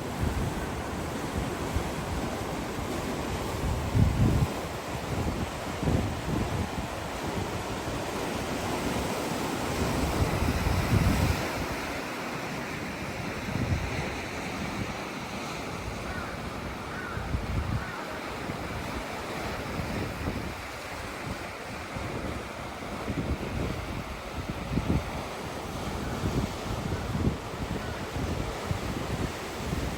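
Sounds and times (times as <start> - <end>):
wind buffeting microphone: 0.0 - 12.1, 13.1 - 29.9
sea waves washing on shore: 0.0 - 29.9.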